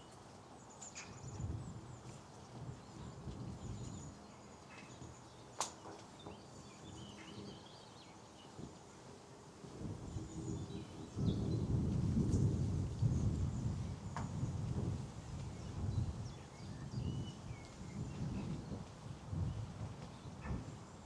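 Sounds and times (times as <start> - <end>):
small birds chirping: 0.0 - 8.7
wind buffeting microphone: 1.2 - 4.2, 9.7 - 21.0.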